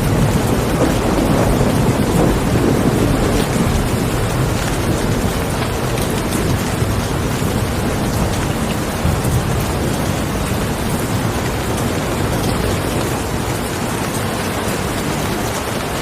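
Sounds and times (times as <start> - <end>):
heavy rain: 0.0 - 16.0.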